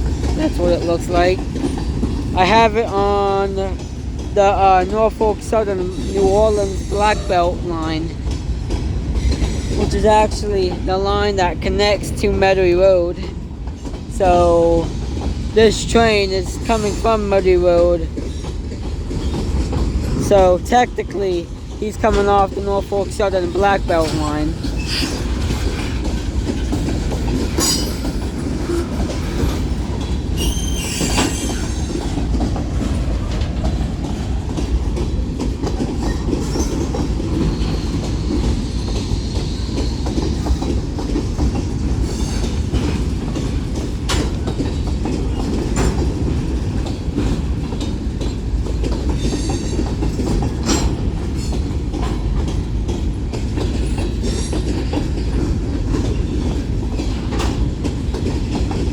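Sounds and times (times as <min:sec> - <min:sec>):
freight train cars rumbling: 0:00.0 - 0:58.9
wheels clicking over rail joints: 0:00.0 - 0:58.9
high wheel squeals: 0:30.4 - 0:32.1.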